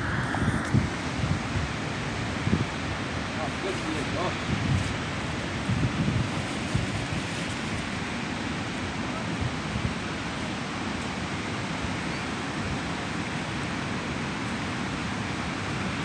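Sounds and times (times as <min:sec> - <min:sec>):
wind buffeting microphone: 0:00.0 - 0:10.6
sea surf rushing: 0:00.0 - 0:16.0.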